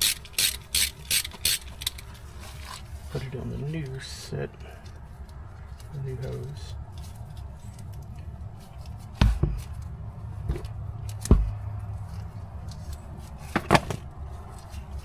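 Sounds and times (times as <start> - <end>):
tools knocking and clunking: 9.1 - 9.8, 10.4 - 11.7.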